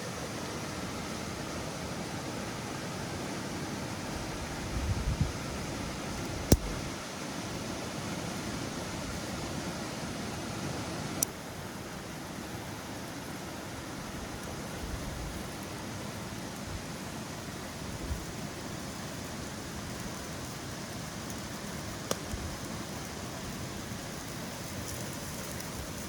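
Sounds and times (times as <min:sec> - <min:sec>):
sharp click: 0:06.5 - 0:06.9.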